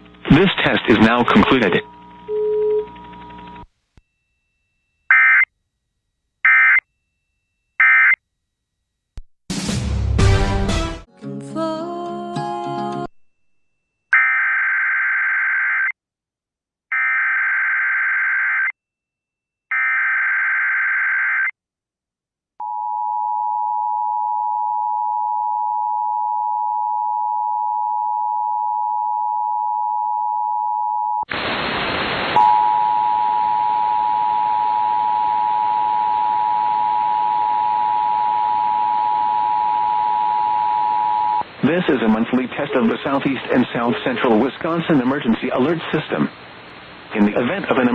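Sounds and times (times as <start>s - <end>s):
radio hiss: 0.2s - 2.0s, 31.3s - 32.5s, 41.4s - 47.9s.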